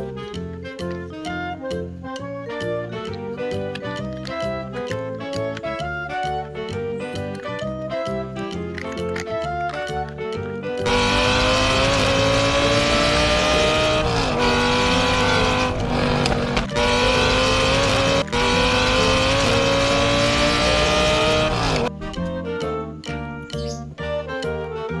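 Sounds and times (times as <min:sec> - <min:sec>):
race car engine accelerating: 0:10.8 - 0:21.9.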